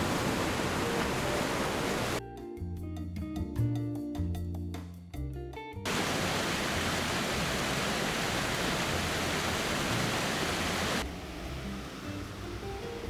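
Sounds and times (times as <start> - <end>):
falling water rushing: 0.0 - 2.2, 5.9 - 11.0
music: 2.2 - 5.9, 11.0 - 13.0.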